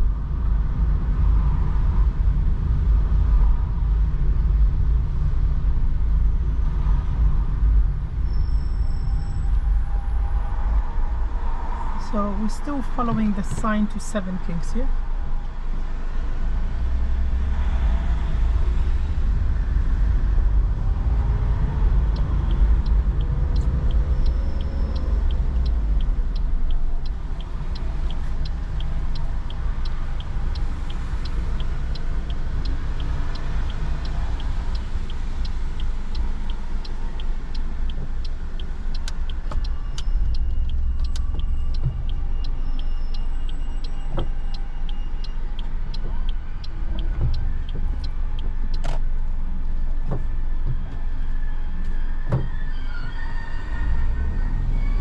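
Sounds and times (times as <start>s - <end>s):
engine and tyre rumble: 0.0s - 55.0s
faint ticking: 21.8s - 48.8s.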